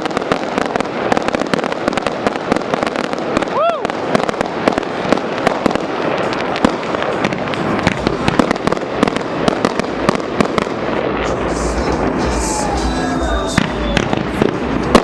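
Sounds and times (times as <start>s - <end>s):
fireworks crackling: 0.0s - 15.0s
fireworks cracks and bangs: 0.0s - 15.0s
deep rumble: 7.3s - 15.0s.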